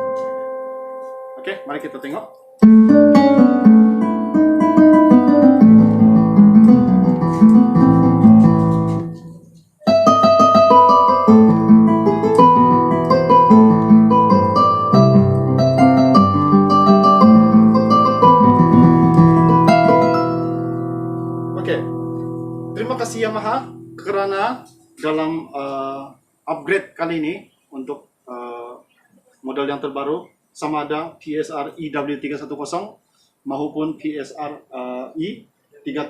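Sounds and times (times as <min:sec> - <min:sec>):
keyboard playing guitar voice: 0:00.0 - 0:25.6.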